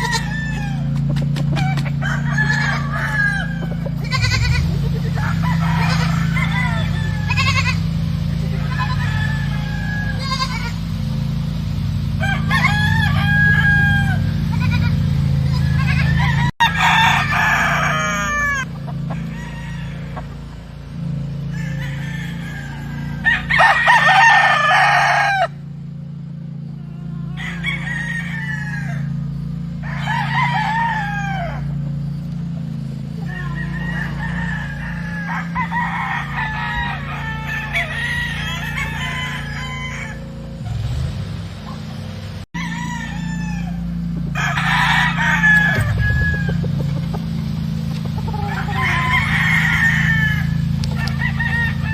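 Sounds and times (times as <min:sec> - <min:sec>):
chickens clucking: 0:00.0 - 0:11.3, 0:12.2 - 0:25.5, 0:41.6 - 0:51.9
roosters crowing: 0:00.0 - 0:51.9
steady low hum: 0:00.0 - 0:51.9.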